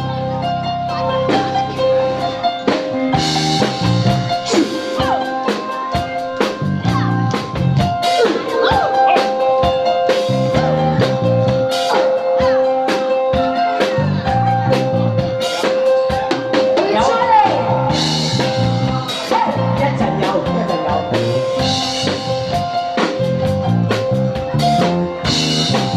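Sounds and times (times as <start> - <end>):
instrumental pop music: 0.0 - 25.9.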